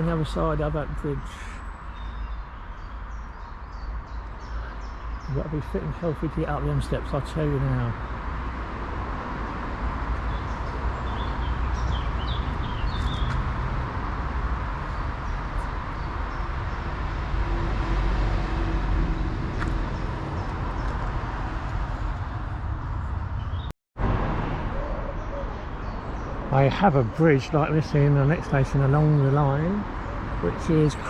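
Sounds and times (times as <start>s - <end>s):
bird chirps: 0.0s - 7.3s, 10.3s - 13.4s
road traffic rumble: 0.0s - 31.0s.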